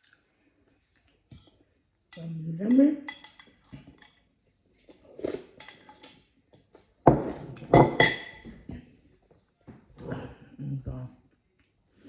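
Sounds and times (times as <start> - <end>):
dishes and cutlery clinking: 1.3 - 4.3, 5.3 - 8.7.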